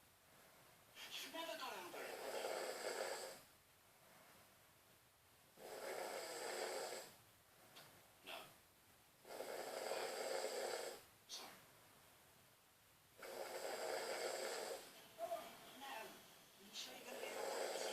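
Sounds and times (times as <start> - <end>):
man snoring: 2.0 - 3.4, 5.6 - 7.2, 9.2 - 11.0, 13.2 - 15.0, 17.1 - 17.9.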